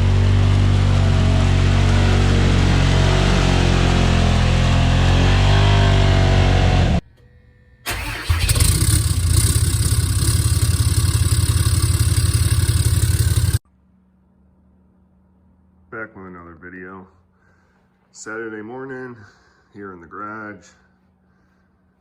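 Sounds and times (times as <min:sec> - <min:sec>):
vehicle engine starting and running: 0:00.0 - 0:07.0, 0:07.9 - 0:13.6.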